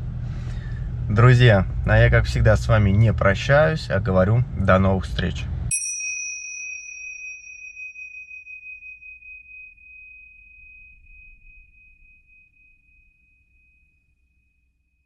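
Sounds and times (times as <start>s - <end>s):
faint low hum: 0.0s - 5.7s
high bell-like chime ringing: 5.7s - 14.6s.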